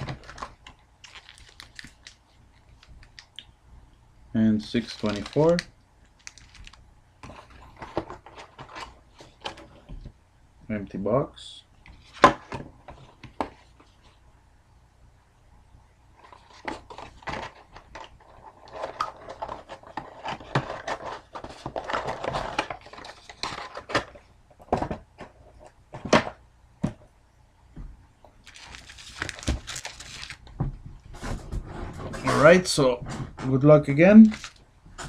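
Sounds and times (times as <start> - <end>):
foil wrappers crinkling and tearing: 0.0 - 3.3, 4.6 - 6.8, 28.4 - 30.5, 34.2 - 34.6.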